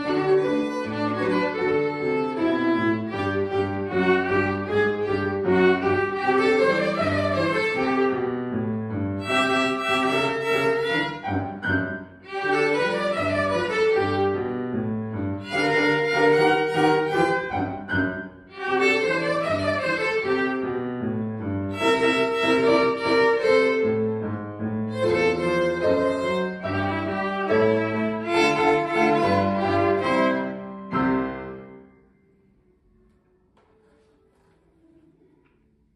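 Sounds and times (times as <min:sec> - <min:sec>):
violins playing ragtime: 0:00.0 - 0:08.2, 0:09.2 - 0:11.4, 0:12.3 - 0:14.4, 0:15.4 - 0:17.7, 0:18.5 - 0:20.6, 0:21.7 - 0:24.1, 0:24.9 - 0:30.6
piano accompaniment: 0:00.0 - 0:35.5.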